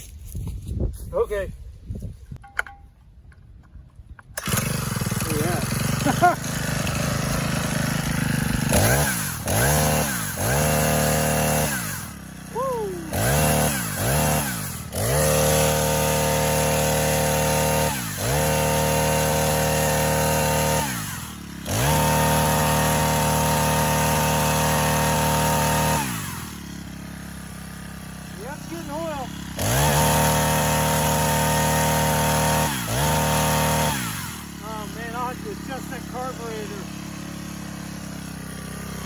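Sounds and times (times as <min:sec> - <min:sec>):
man talking: 0:01.1 - 0:01.5, 0:05.2 - 0:05.7, 0:28.4 - 0:29.4, 0:34.6 - 0:36.9
chainsaw engine revving: 0:04.3 - 0:39.0.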